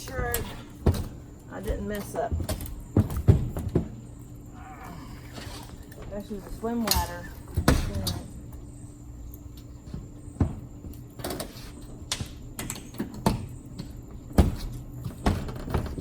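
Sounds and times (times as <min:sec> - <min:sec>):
low steady hum: 0:00.0 - 0:16.0
clicks and knocks of straps: 0:10.8 - 0:16.0.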